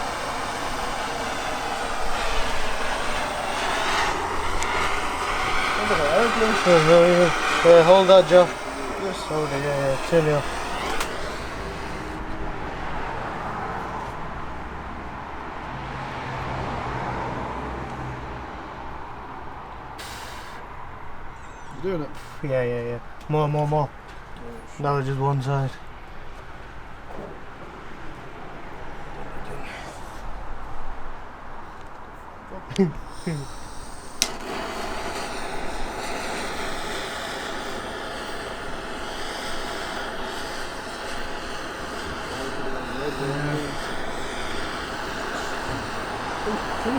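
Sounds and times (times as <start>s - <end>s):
blowtorch flame hissing: 0.0s - 13.6s, 19.5s - 22.5s, 33.0s - 46.9s
sharp click: 10.0s - 12.2s, 34.1s - 34.6s.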